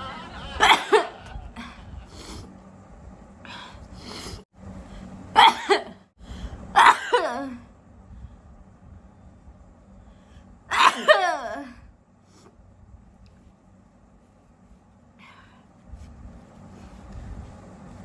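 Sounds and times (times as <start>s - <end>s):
woman sneezing: 10.7s - 11.7s.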